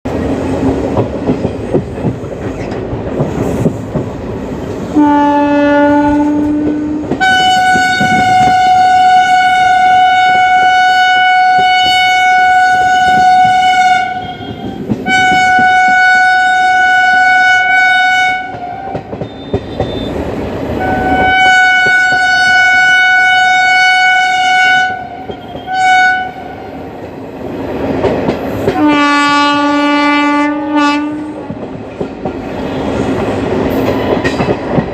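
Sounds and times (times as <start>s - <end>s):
train wheels clattering on rail joints: 0.1s - 5.2s, 5.8s - 34.9s
locomotive two-tone horn: 4.9s - 20.2s, 20.8s - 26.8s, 28.7s - 31.5s.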